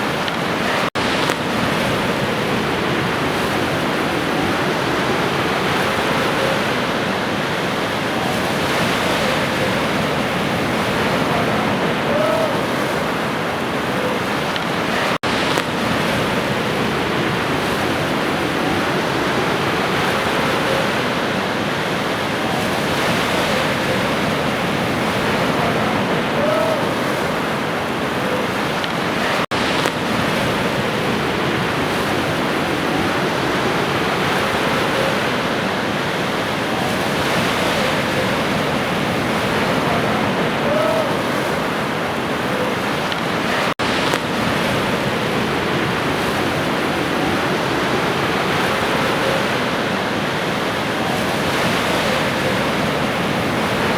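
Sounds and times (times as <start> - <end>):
waves washing on shore: 0.0 - 53.9.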